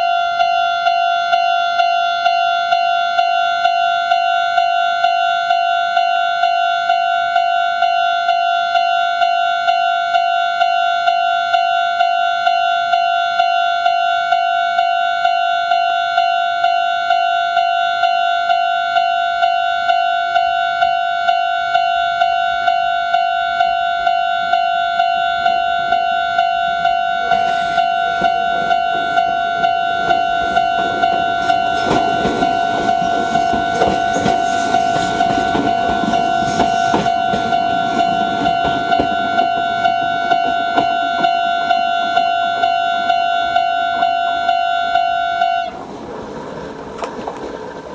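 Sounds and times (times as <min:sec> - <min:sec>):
crossing warning bell ringing: 0:00.0 - 0:47.9
electric train running: 0:21.8 - 0:47.9.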